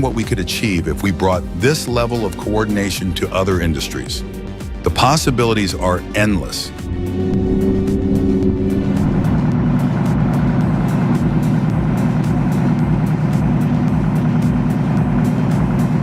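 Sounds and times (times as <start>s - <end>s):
background music: 0.0s - 16.0s
heavy vehicle engine running: 6.8s - 16.0s.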